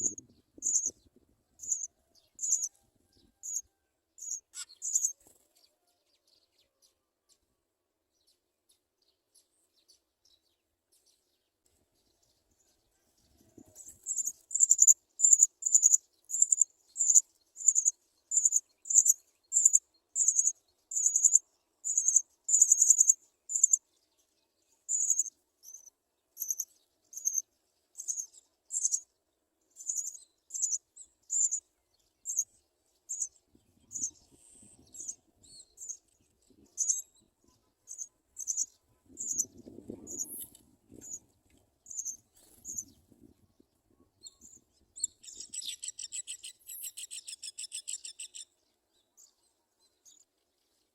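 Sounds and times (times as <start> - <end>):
sparrow chirping: 0.0 - 2.8, 3.4 - 5.4, 13.8 - 43.4, 44.0 - 50.3.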